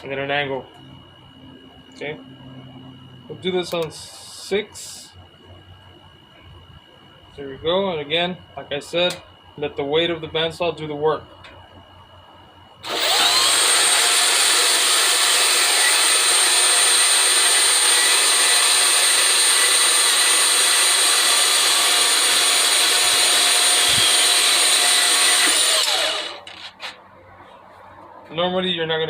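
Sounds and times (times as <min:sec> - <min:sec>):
saw motor winding down: 0:12.8 - 0:26.7
band saw cutting wood: 0:12.8 - 0:26.9.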